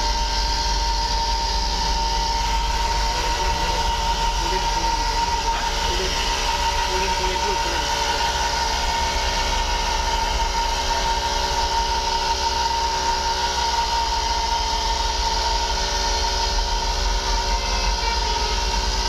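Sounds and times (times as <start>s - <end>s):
air horns chord: 17.4s - 19.0s.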